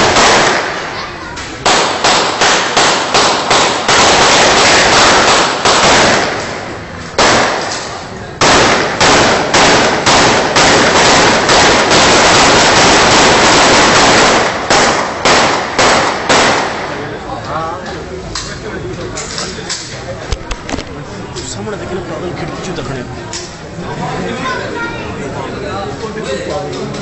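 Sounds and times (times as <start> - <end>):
gunfire from several guns: 0.0 - 17.2.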